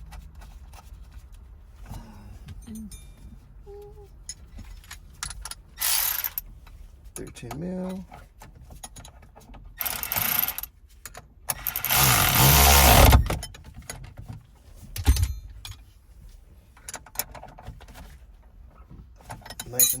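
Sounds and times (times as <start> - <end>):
ratchet tightening a nut: 5.8 - 6.4, 9.8 - 10.7, 11.5 - 13.4.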